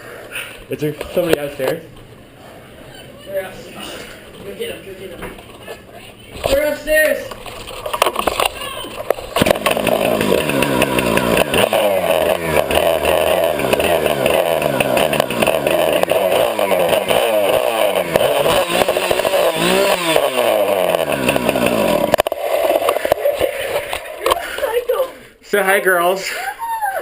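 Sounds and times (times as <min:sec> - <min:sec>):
chainsaw revving: 0:08.1 - 0:25.0.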